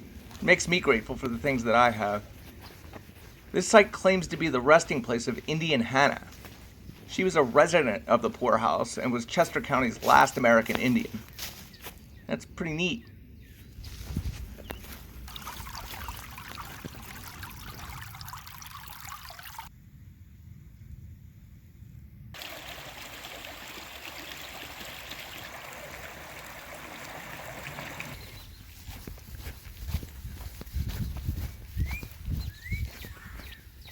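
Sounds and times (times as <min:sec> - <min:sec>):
stream trickling: 0:14.6 - 0:19.7, 0:22.4 - 0:29.0.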